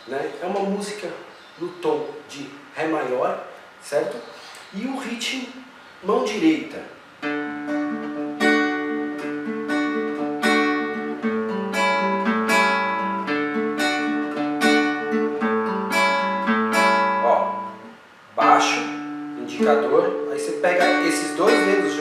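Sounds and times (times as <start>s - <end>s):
acoustic guitar fingerpicking: 7.2s - 22.0s.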